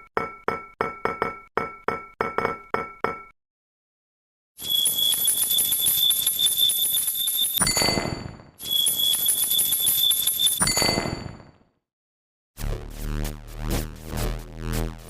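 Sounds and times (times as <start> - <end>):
level crossing warning bell: 4.6 - 7.8
fast high-pitched ringing: 4.6 - 11.3.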